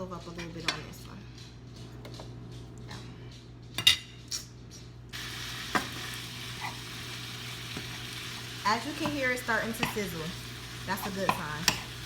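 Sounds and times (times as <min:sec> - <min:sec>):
meat sizzling in a pan: 0:05.2 - 0:12.0.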